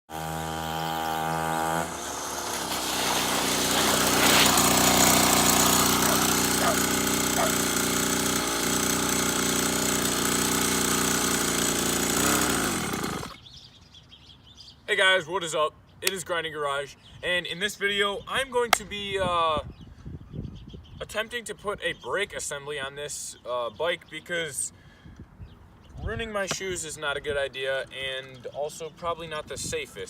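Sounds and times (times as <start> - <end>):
scooter engine running: 0.1 - 13.4.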